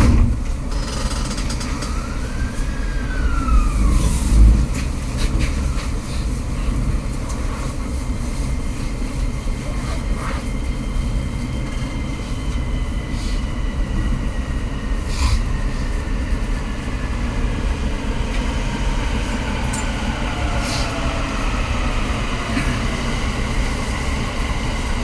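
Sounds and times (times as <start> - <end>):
train wheels rumbling on rail: 0.0 - 25.0
faint whining tones: 1.0 - 5.9.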